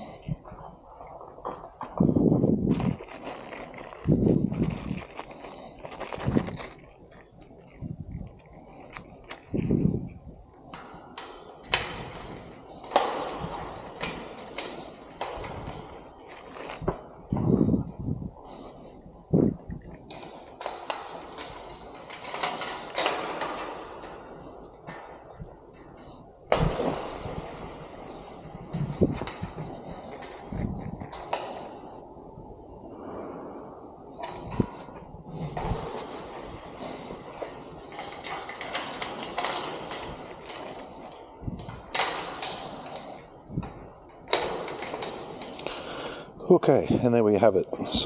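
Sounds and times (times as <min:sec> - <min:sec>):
metal clinks and rattles: 0:02.7 - 0:17.4, 0:19.4 - 0:26.6, 0:34.2 - 0:45.8.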